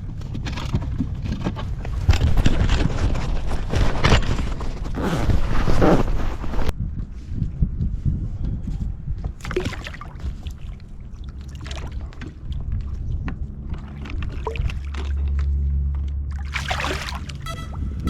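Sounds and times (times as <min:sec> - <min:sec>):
steady low rumble: 0:06.6 - 0:18.0.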